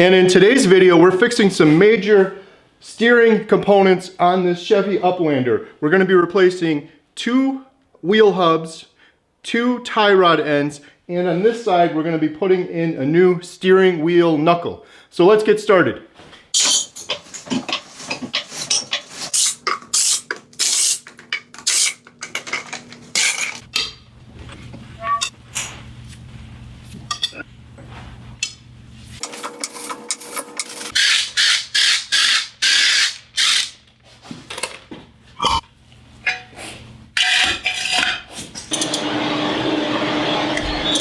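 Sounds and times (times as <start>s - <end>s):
metal tools clanking: 16.6s - 20.4s, 21.0s - 24.0s.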